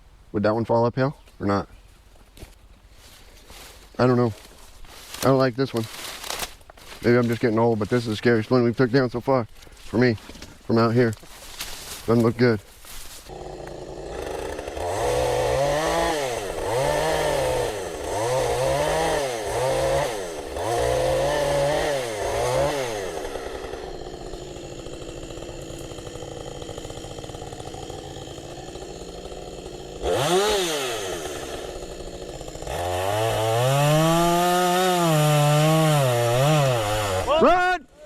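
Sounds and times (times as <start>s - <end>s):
chainsaw cutting and revving: 13.1s - 37.6s.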